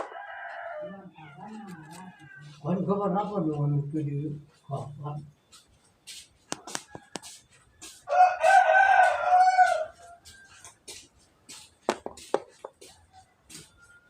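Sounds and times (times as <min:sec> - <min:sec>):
rooster crowing: 0:00.0 - 0:03.0, 0:06.6 - 0:10.7.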